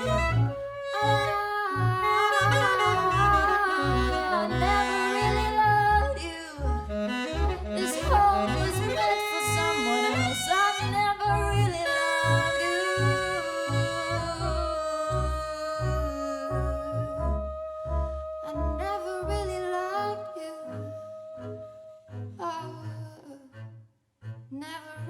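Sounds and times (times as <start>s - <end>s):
plucked double bass: 0.0s - 19.7s
alto saxophone: 0.0s - 22.0s
person singing: 1.0s - 21.7s.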